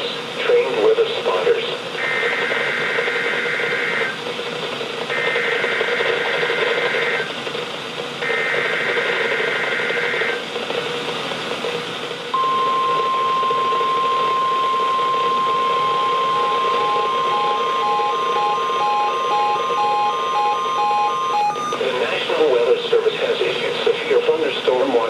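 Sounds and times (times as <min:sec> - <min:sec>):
radio static hiss: 0:00.0 - 0:07.3, 0:08.2 - 0:10.9, 0:21.6 - 0:25.0
digital data tone bursts: 0:02.0 - 0:04.2, 0:05.1 - 0:07.3, 0:12.4 - 0:22.5
steady warning alarm tone: 0:02.0 - 0:04.2, 0:05.1 - 0:07.4, 0:08.2 - 0:10.4, 0:12.3 - 0:22.6.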